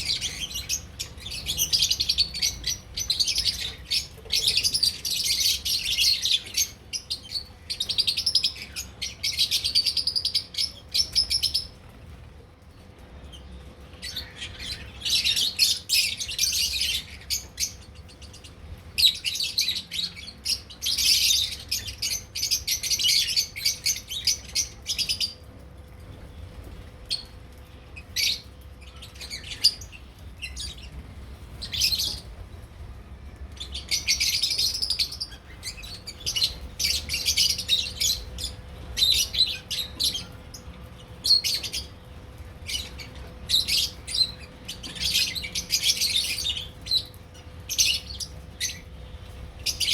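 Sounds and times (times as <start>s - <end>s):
lovebirds chattering: 0.0s - 11.8s, 13.1s - 49.9s.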